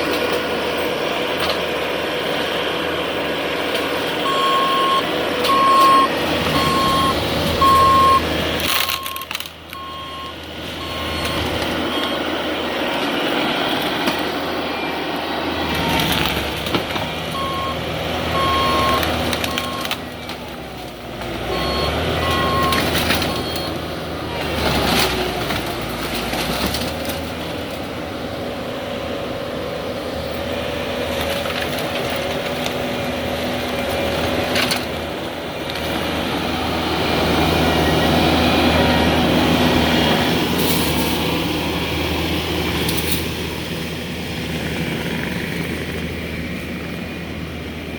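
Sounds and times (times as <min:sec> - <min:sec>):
diesel engine running: 0:00.0 - 0:47.9
reversing alarm beeping: 0:04.2 - 0:12.2, 0:17.4 - 0:19.9, 0:21.5 - 0:23.8
demolition debris crashing: 0:24.4 - 0:27.8.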